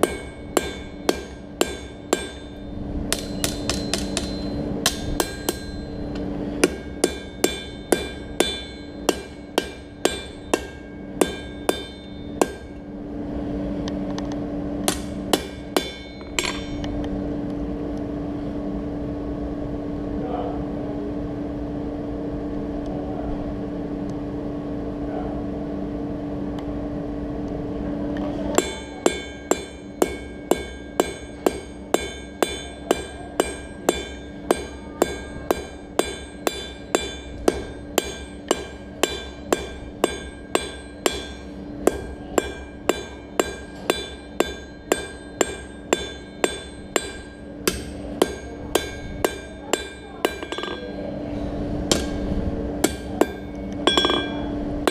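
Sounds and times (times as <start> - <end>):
hammer striking steel on anvil: 0.0 - 12.9, 14.8 - 17.0, 28.5 - 51.0, 51.9 - 52.2, 52.8 - 54.9
steady hum: 0.0 - 54.9.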